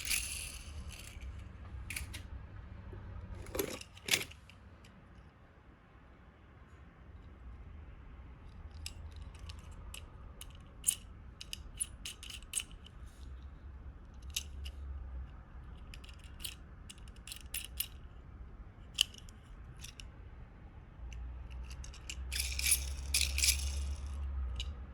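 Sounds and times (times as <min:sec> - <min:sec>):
toy cars clicking and clinking: 0:00.0 - 0:02.3, 0:03.4 - 0:05.3, 0:08.4 - 0:13.4, 0:14.0 - 0:18.2, 0:18.8 - 0:20.2, 0:21.0 - 0:24.9.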